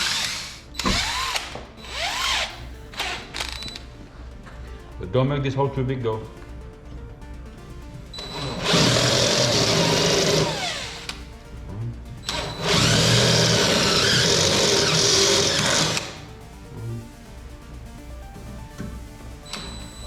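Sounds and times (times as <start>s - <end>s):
power drill boring through door: 0.0s - 3.8s, 8.2s - 11.2s, 12.3s - 16.3s
background music: 0.0s - 20.0s.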